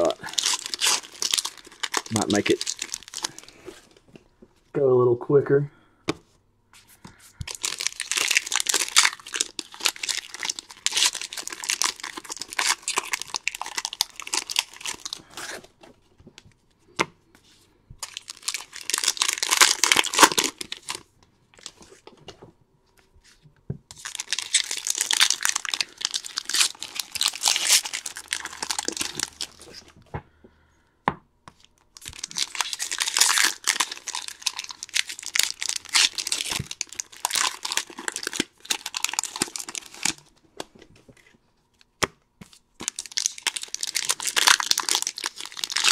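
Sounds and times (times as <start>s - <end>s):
card wrappers crinkling and ripping: 0.0s - 4.0s, 7.5s - 15.8s, 18.0s - 22.3s, 23.9s - 30.0s, 31.5s - 41.3s, 42.5s - 45.9s.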